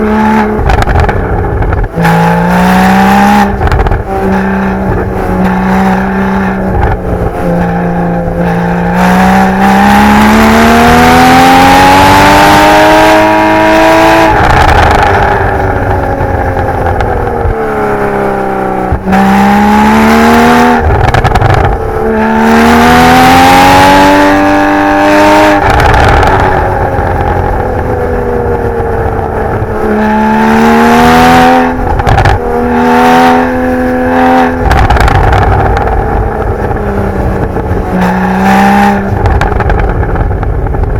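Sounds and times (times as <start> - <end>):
car engine revving hard: 0.0 - 40.9.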